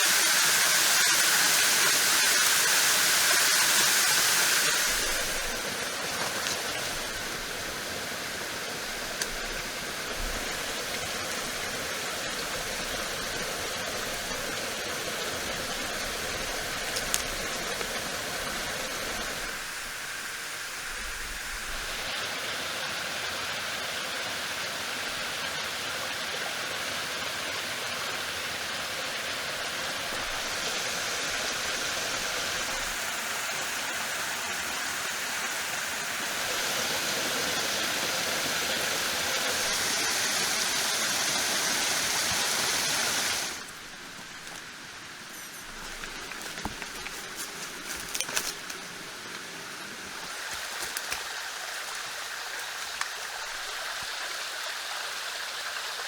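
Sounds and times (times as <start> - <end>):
running water rushing: 0.0 - 56.0.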